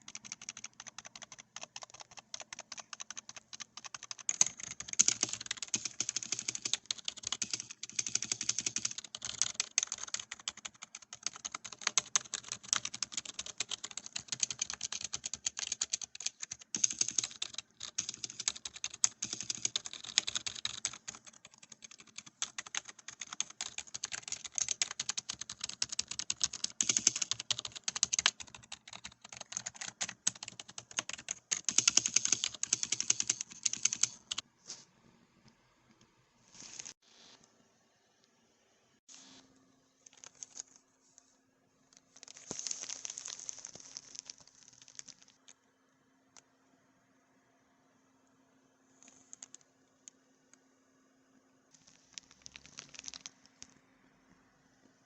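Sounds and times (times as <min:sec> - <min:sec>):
keyboard typing: 0:00.0 - 0:34.4, 0:51.8 - 0:53.8.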